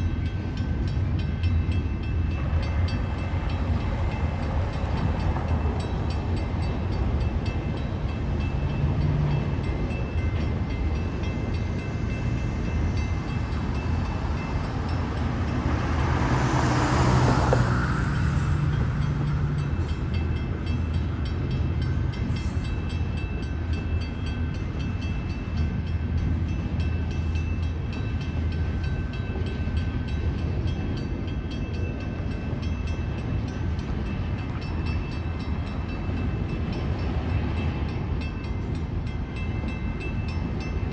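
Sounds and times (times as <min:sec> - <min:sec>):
train wheels rumbling on rails: 0:00.0 - 0:40.9
rushing noise: 0:11.9 - 0:21.2.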